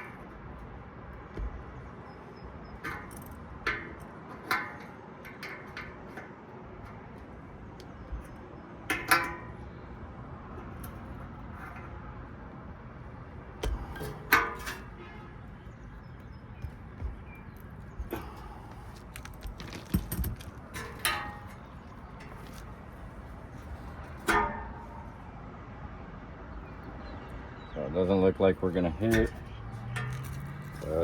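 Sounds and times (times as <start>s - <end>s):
metal tools clinking: 17.4s - 25.0s, 29.0s - 31.0s.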